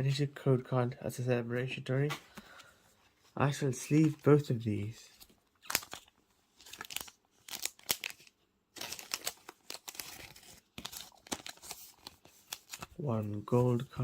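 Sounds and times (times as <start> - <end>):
plastic sleeves crinkling: 3.4 - 14.0.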